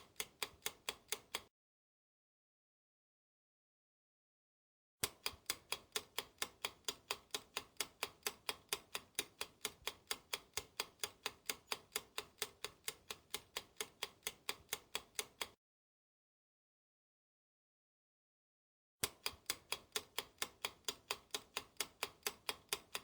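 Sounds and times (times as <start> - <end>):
clock ticking: 0.0 - 1.5, 5.0 - 15.6, 19.0 - 23.0.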